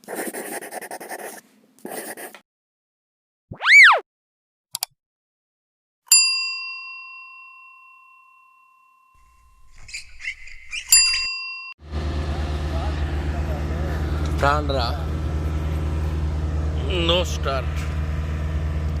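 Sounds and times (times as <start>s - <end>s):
swooping tone: 3.5s - 4.0s
bell-like ding: 6.1s - 9.6s, 11.0s - 11.8s.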